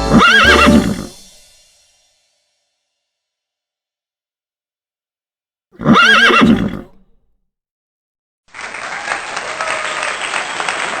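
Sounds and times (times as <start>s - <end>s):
horse whinnying: 0.1s - 1.2s, 5.8s - 7.1s.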